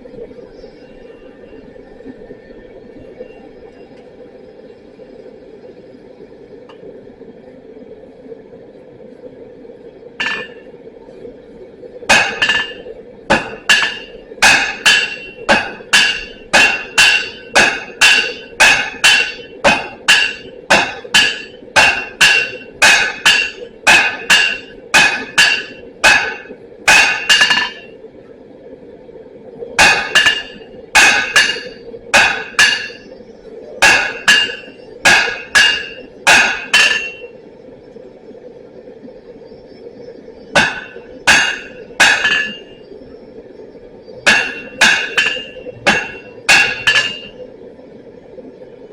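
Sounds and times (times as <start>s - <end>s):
steady hum: 0.0s - 48.9s
hammer striking steel on anvil: 10.2s - 10.6s, 12.1s - 27.9s, 29.8s - 33.0s, 33.8s - 37.3s, 40.6s - 42.7s, 44.3s - 47.4s.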